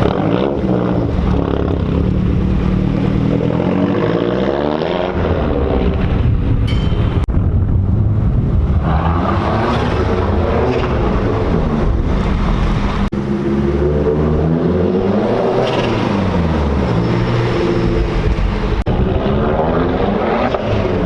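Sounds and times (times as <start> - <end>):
car engine under load: 0.0 - 21.0.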